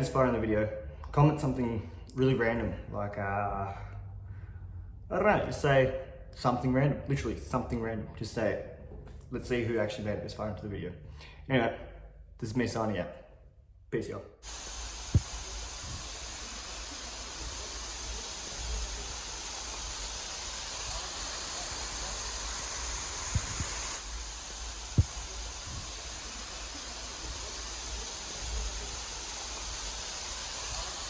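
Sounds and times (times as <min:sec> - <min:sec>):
falling water hissing: 0:14.4 - 0:31.0.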